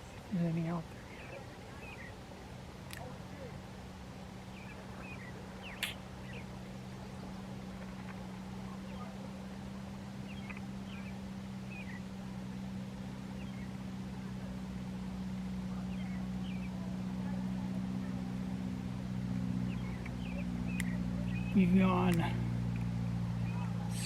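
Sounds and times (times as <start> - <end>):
bird chirps: 0.0 - 2.2, 4.5 - 9.2, 10.2 - 12.3, 13.3 - 13.8, 15.7 - 17.4, 19.6 - 22.8, 23.4 - 24.0
distant engine humming: 0.0 - 24.0.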